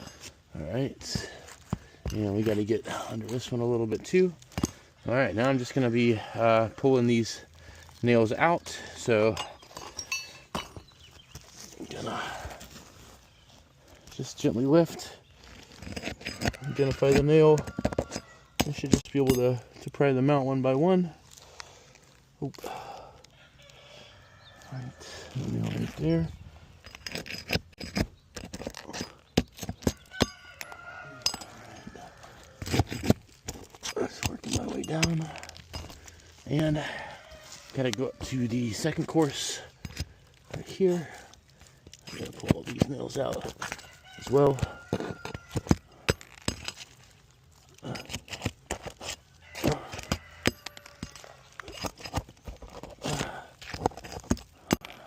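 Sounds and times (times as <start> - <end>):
metal tool scraping roofing nails: 15.5 - 19.4, 26.8 - 36.7, 41.9 - 55.0.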